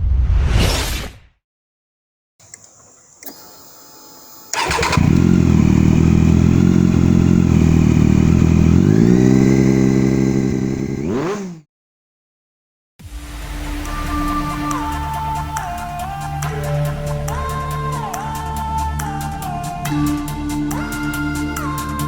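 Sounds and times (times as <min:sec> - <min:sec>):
motorcycle engine idling and revving: 0:03.3 - 0:11.7.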